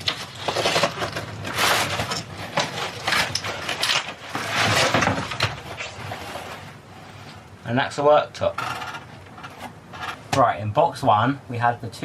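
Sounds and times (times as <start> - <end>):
cardboard rustling and scraping: 0.0 - 7.4.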